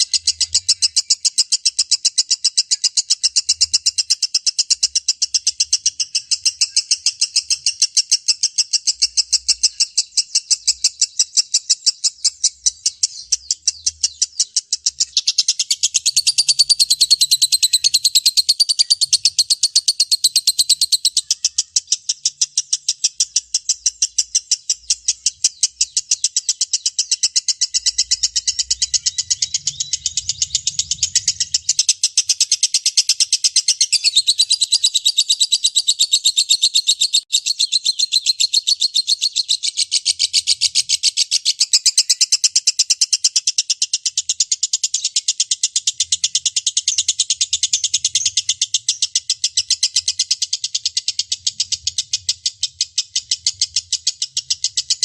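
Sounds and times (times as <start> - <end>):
lovebird chattering: 0.0 - 55.0.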